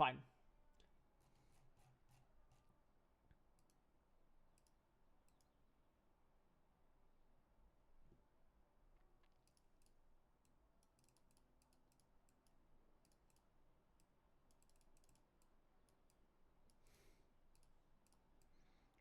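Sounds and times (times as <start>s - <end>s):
faint computer clicking: 3.3s - 3.9s, 4.5s - 5.6s, 9.0s - 19.0s.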